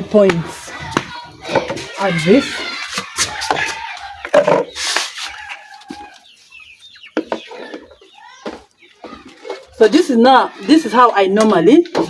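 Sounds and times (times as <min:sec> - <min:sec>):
chickens clucking: 0:00.0 - 0:12.0
rooster crowing: 0:01.9 - 0:04.5, 0:05.3 - 0:06.3.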